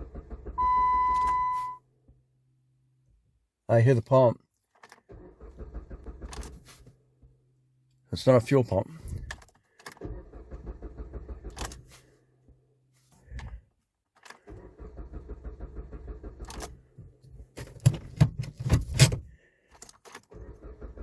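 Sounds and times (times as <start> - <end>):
engine cranking by starter: 0.0 - 1.5, 4.9 - 6.8, 9.1 - 12.2, 14.3 - 19.4, 20.1 - 21.0.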